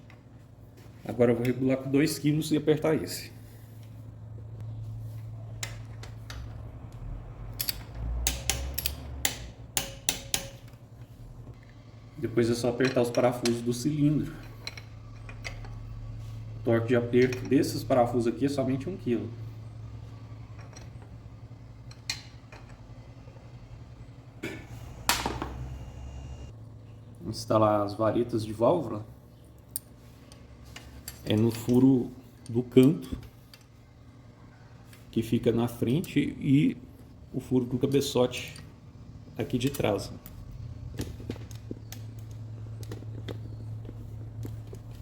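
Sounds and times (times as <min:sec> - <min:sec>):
steady low hum: 0:00.0 - 0:45.0
torque wrench clicking: 0:07.6 - 0:10.7.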